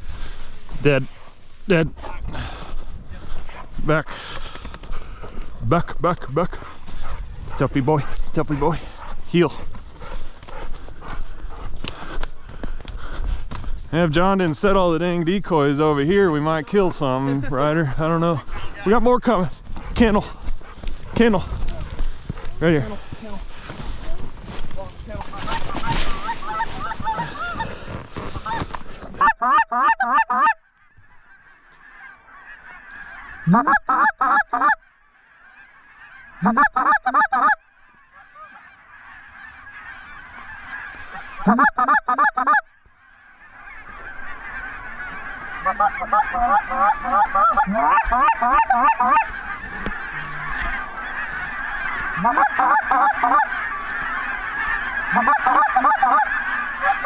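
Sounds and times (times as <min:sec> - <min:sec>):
flock of geese honking: 0:20.4 - 0:57.0
goose honking and clucking: 0:25.1 - 0:57.0.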